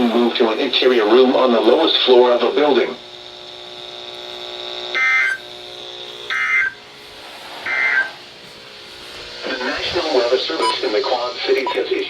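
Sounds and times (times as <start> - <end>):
harsh digital data tones: 4.9 - 5.5, 6.3 - 6.8, 7.6 - 8.2, 9.4 - 12.0.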